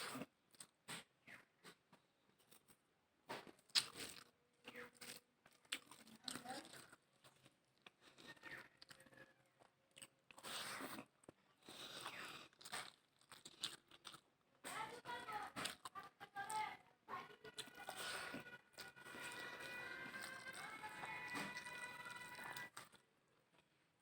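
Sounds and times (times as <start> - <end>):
crunching bites and chewing: 0.0 - 1.8, 2.4 - 14.3, 15.5 - 16.1, 17.5 - 23.0
wet mouth sounds: 10.0 - 14.2.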